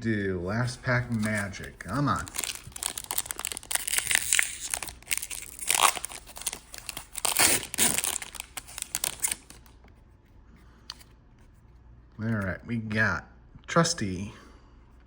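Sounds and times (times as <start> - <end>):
foil wrapper tearing and crinkling: 1.0 - 9.8.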